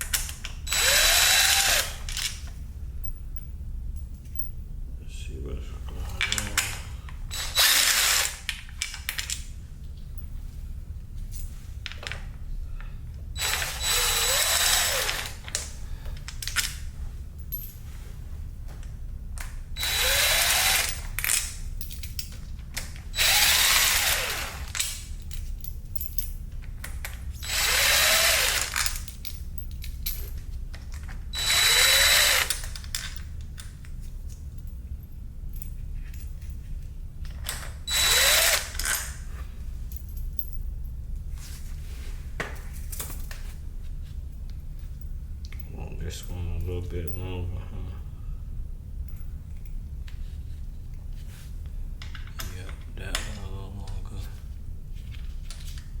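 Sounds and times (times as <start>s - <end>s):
power drill whining: 0.7s - 2.3s, 7.3s - 8.4s, 13.4s - 15.4s, 19.8s - 21.1s, 23.1s - 24.8s, 27.4s - 28.8s, 31.3s - 32.7s, 37.9s - 39.0s
faint clicks of parts: 44.1s - 47.2s, 49.0s - 56.0s.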